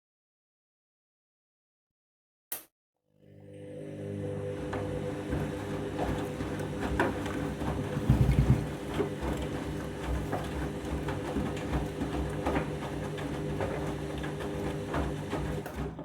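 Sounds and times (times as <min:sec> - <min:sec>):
washing machine motor humming: 0:03.2 - 0:16.0
water splashing in drum: 0:07.1 - 0:10.4.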